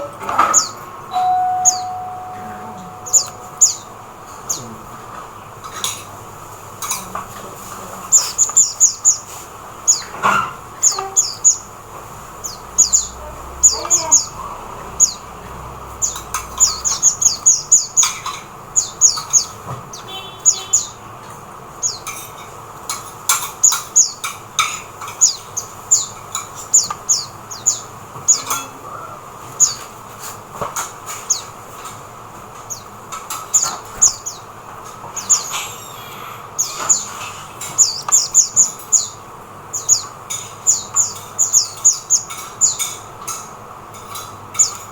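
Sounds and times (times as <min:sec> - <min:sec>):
bird high chirps: 0:00.5 - 0:04.7, 0:10.8 - 0:11.7, 0:12.4 - 0:15.3, 0:16.0 - 0:21.0, 0:35.1 - 0:42.9.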